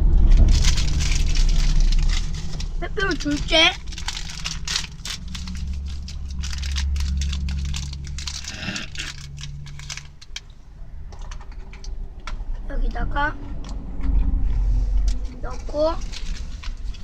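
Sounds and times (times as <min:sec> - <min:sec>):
low steady rumble: 0:00.0 - 0:17.0
plastic wrapper tearing and crinkling: 0:00.1 - 0:10.6, 0:15.0 - 0:17.0.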